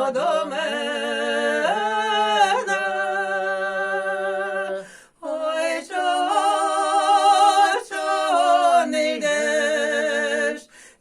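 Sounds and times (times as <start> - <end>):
women singing a cappella: 0.0 - 10.8
breath: 4.8 - 5.2, 10.7 - 11.0.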